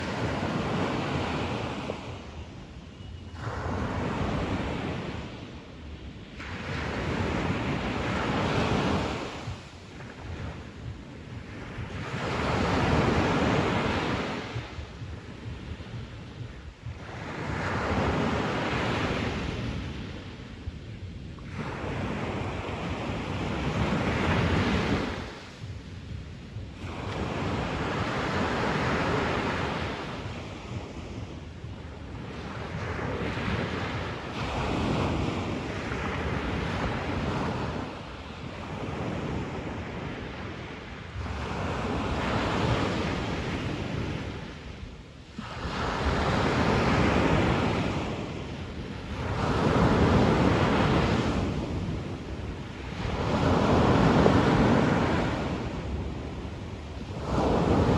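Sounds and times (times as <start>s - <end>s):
sea waves breaking on beach: 45.3s - 57.9s.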